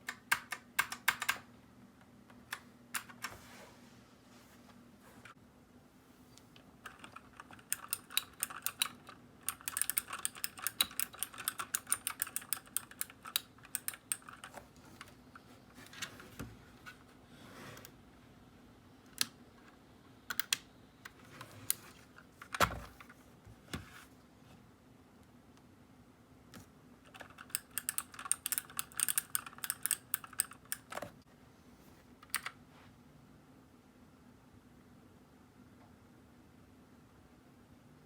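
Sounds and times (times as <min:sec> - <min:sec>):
clicky mechanical keyboard typing: 0:00.0 - 0:01.5, 0:06.8 - 0:15.1, 0:27.0 - 0:31.1.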